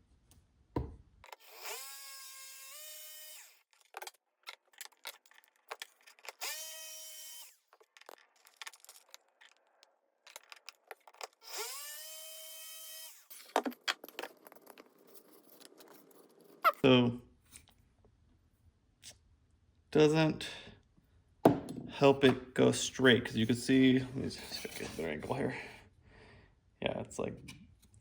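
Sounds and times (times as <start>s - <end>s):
electric drill whining: 1.3s - 3.7s, 6.2s - 8.1s, 11.3s - 13.6s
handling clicks and knocks: 3.8s - 6.4s, 7.7s - 11.4s.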